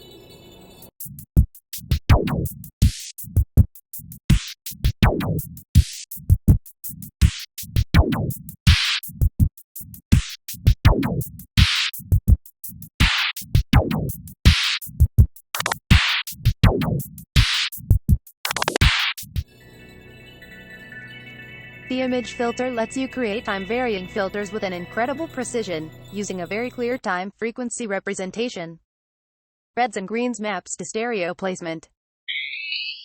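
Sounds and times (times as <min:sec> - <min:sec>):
drum machine beat: 0:01.0 - 0:19.5.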